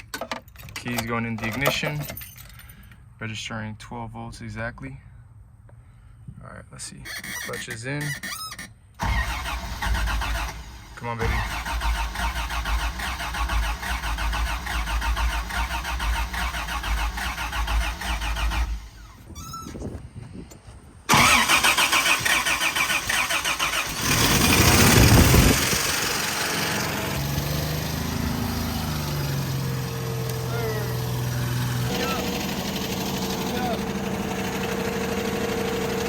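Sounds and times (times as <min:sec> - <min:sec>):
engine cranking: 0:07.1 - 0:19.3, 0:21.1 - 0:36.0
engine idling: 0:09.0 - 0:19.2, 0:21.1 - 0:36.0.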